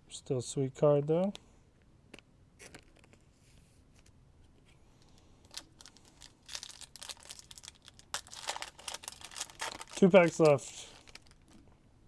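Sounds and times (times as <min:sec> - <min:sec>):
foil wrapper tearing and crinkling: 0:05.5 - 0:11.5.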